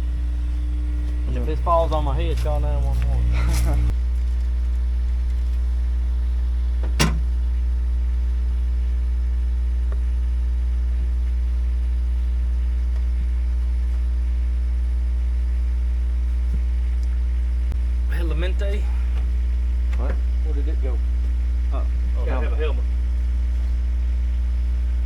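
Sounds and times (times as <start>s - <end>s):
engine idling: 0.0s - 25.0s.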